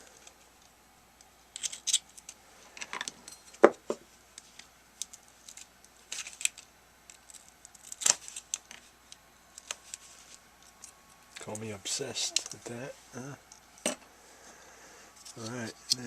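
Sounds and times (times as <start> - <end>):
plastic parts clicking and rattling: 1.5 - 3.4.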